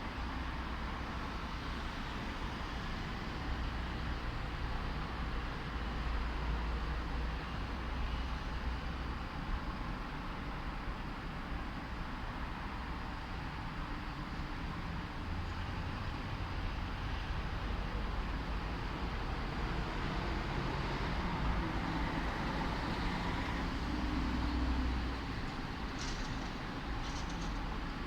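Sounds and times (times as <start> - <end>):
street traffic noise: 0.0 - 28.0.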